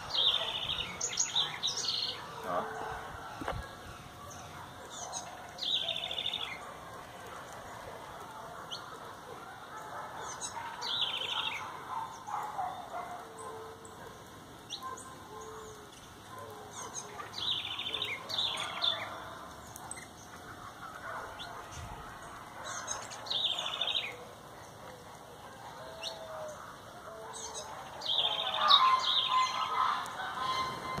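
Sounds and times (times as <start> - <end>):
songbirds chirping: 0.0 - 31.0
bird repeating song phrase: 27.4 - 30.0.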